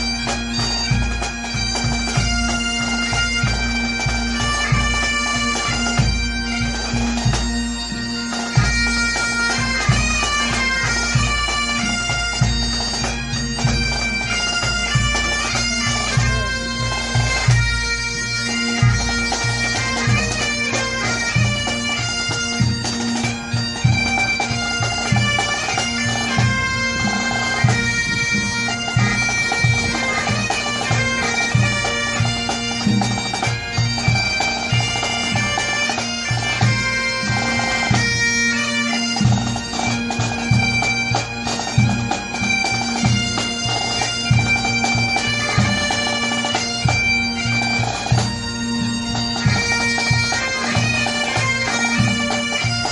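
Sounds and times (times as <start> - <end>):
bagpipe chanter melody: 0.0 - 52.9
bagpipe drone: 0.0 - 52.9.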